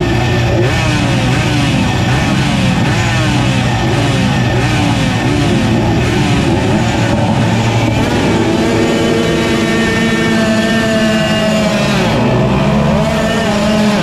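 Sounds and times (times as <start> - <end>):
racing engine revving: 0.0 - 14.0
wind rush: 5.2 - 12.3.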